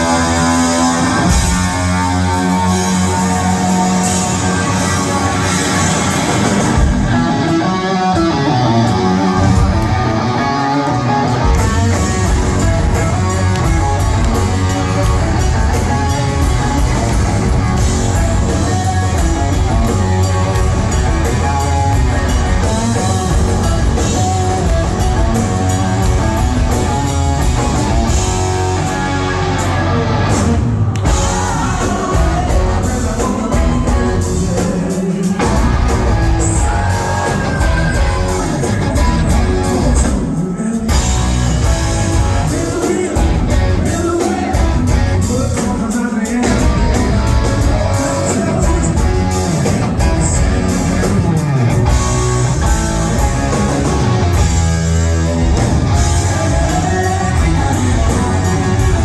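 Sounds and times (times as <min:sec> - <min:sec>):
drum kit: 0:00.0 - 0:59.0
electric guitar: 0:00.0 - 0:59.0
person singing: 0:30.9 - 0:54.5, 0:55.2 - 0:59.0.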